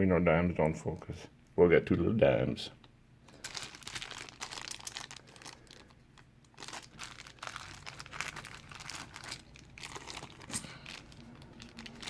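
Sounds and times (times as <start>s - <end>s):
packaging crinkling and rustling: 3.2s - 12.0s.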